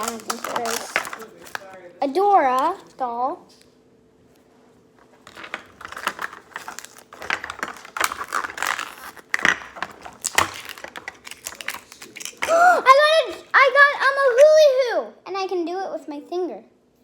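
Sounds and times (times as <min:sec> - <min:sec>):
small plastic pieces clicking: 0:00.0 - 0:01.7, 0:05.3 - 0:12.5
plastic wrapper crinkling: 0:00.0 - 0:03.7, 0:05.0 - 0:13.6.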